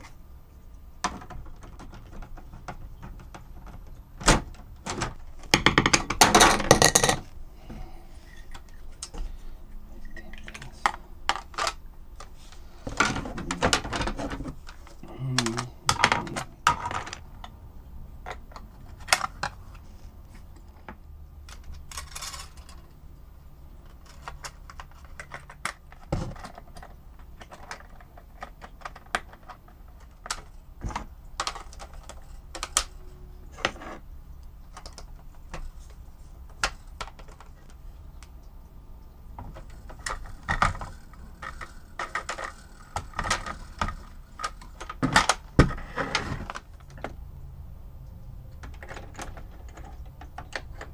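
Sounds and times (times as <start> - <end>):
plastic and metal parts clicking: 10.3 - 17.2, 23.8 - 34.0, 39.4 - 47.2, 48.6 - 50.9.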